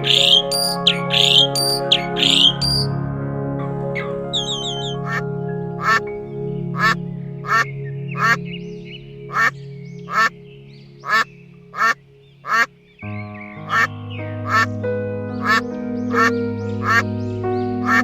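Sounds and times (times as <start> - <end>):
duck quacking: 0.0 - 2.9, 4.3 - 5.2, 5.8 - 6.0, 6.8 - 8.4, 9.3 - 9.5, 11.0 - 12.7, 13.6 - 14.7, 15.4 - 15.6, 16.2 - 17.0
background music: 0.0 - 18.0.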